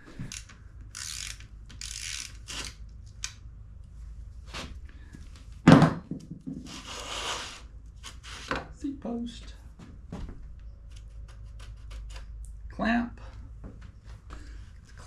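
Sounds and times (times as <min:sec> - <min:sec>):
tools clicking: 0:00.3 - 0:03.4.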